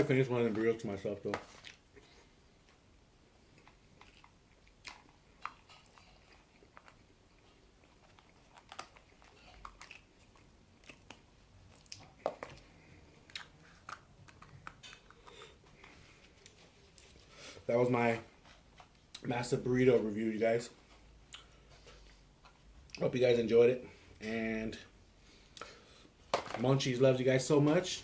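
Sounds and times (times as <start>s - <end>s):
person chewing food: 3.4s - 17.4s.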